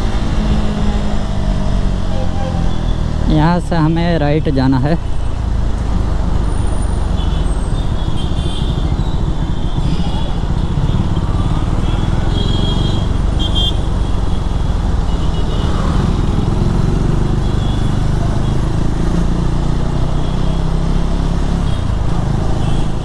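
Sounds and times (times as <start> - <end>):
motorcycle engine rumble: 0.0 - 23.0.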